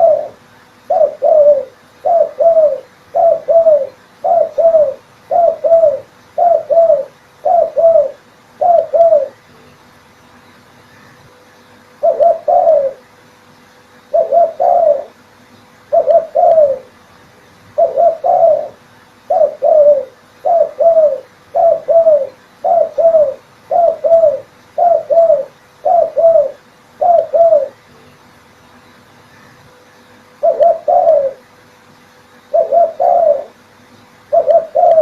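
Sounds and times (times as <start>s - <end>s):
dove cooing: 0.0s - 9.6s, 12.0s - 13.1s, 14.1s - 15.2s, 15.9s - 17.0s, 17.7s - 27.9s, 30.4s - 31.5s, 32.4s - 33.6s, 34.2s - 35.0s.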